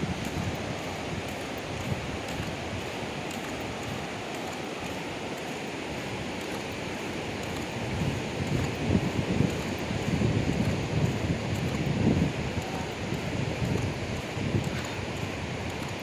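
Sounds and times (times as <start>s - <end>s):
ocean surf on a beach: 0.0s - 16.0s
wind on microphone: 0.0s - 16.0s.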